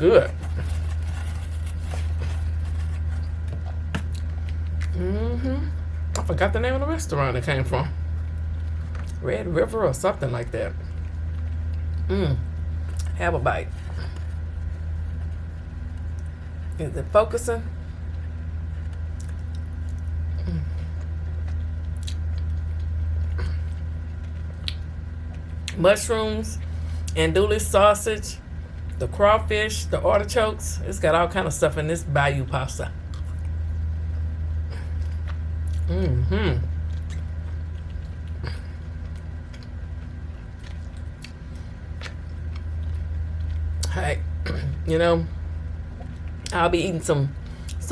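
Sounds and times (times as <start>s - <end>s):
steady low hum: 0.0s - 47.9s
chewing pasta: 0.2s - 5.0s, 8.0s - 9.2s, 10.4s - 16.8s, 17.7s - 25.8s, 32.9s - 35.9s, 36.6s - 44.4s.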